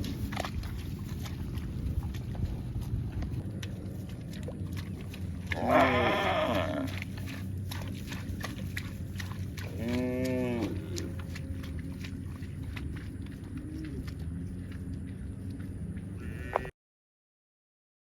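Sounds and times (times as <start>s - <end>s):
livestock calling: 5.5s - 7.0s, 16.2s - 16.7s.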